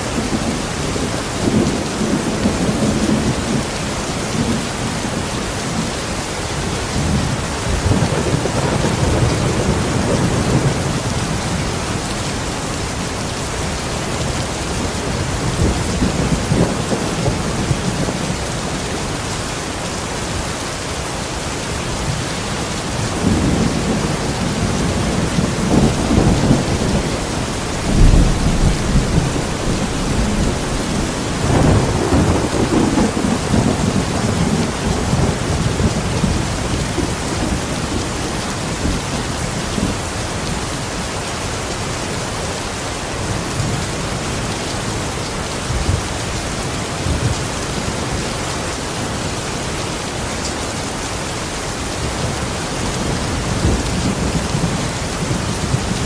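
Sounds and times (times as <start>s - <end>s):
heavy rain: 0.0s - 56.0s
thunder rumbling: 6.6s - 13.0s, 13.6s - 19.0s, 21.7s - 40.1s.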